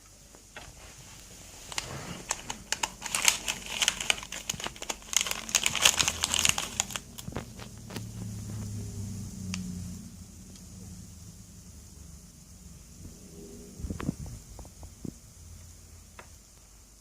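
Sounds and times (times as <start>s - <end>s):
seashells and packaging crinkling: 1.6s - 8.6s.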